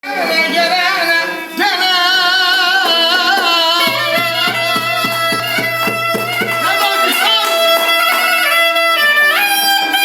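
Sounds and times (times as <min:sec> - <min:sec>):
ornamented folk melody: 0:00.5 - 0:10.0
percussion beats: 0:02.6 - 0:10.0.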